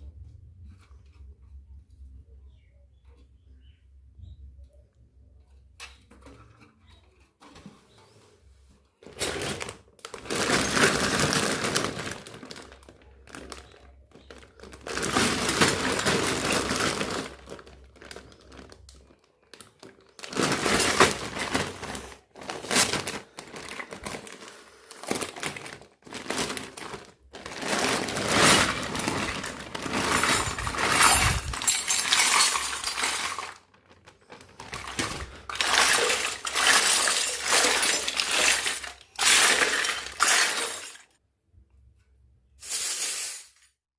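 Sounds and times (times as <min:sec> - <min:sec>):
plastic packaging crinkling: 0:09.0 - 0:41.0
toy kitchen pieces handled: 0:09.0 - 0:41.2.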